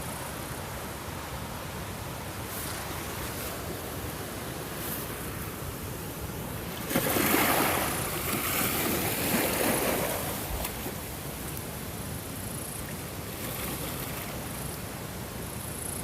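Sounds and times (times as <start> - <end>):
hiss of surf: 0.0 - 16.0
ocean waves breaking: 2.4 - 12.0.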